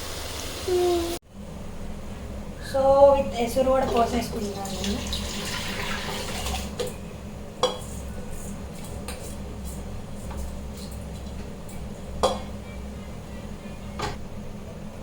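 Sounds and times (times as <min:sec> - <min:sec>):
steady low hum: 0:06.8 - 0:15.0
metal pots clinking and knocking: 0:12.2 - 0:12.6.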